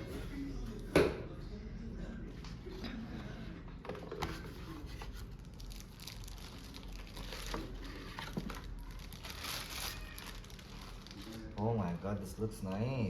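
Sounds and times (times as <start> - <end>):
packaging crinkling and rustling: 4.4 - 12.0.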